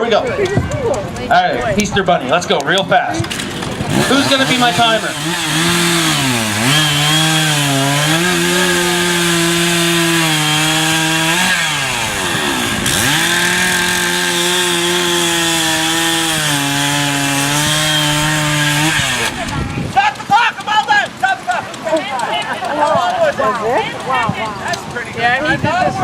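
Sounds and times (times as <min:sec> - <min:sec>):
chainsaw cutting wood: 0:03.2 - 0:21.8.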